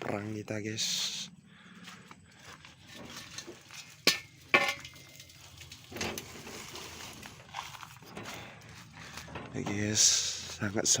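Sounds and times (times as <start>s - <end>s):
hand tools clinking together: 3.3s - 7.0s.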